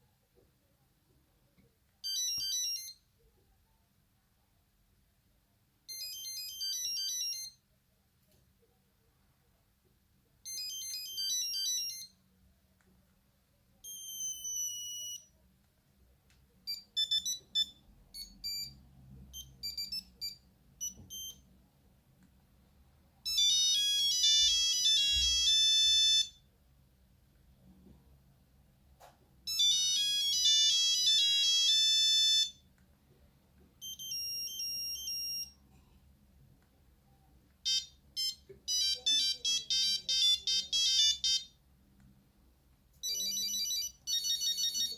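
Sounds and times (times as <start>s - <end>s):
mobile phone ringtone beeps: 2.0s - 3.0s, 5.9s - 7.6s, 10.5s - 12.2s, 13.8s - 15.3s, 16.7s - 21.4s, 23.3s - 26.4s, 29.5s - 32.6s, 33.8s - 35.6s, 37.7s - 41.6s, 43.0s - 44.9s.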